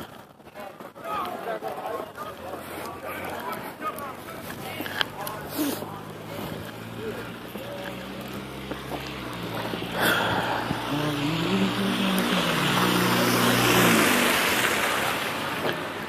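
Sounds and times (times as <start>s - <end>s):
tyre hiss on snowy road: 4.3s - 16.0s
vehicle driving past: 4.9s - 16.0s.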